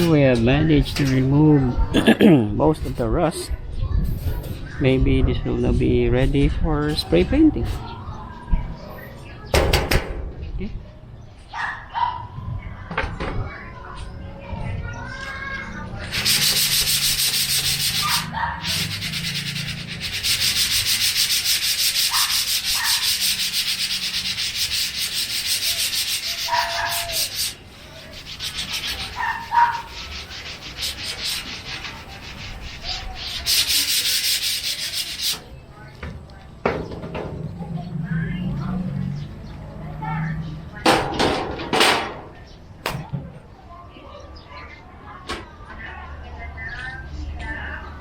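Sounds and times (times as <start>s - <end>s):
sanding scraping on steel: 16.0s - 35.5s.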